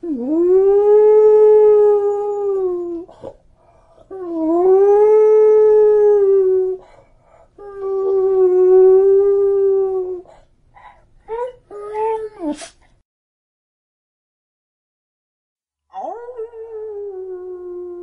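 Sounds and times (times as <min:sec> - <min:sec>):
dog howling: 0:15.9 - 0:18.0.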